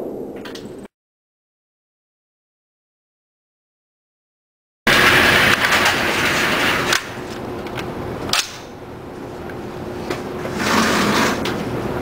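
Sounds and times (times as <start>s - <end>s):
steady background noise: 4.9s - 12.0s.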